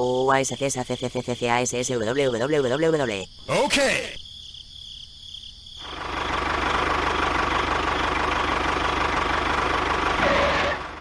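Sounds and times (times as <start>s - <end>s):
engine running with knocking beat: 5.8s - 11.0s.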